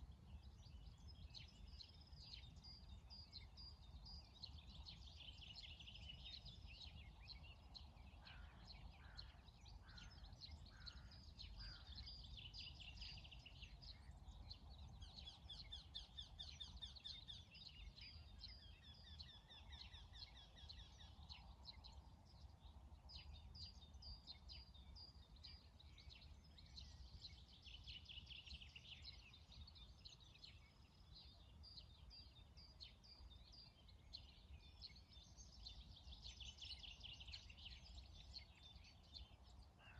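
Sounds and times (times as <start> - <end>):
songbirds chirping and trilling: 0.0 - 39.9.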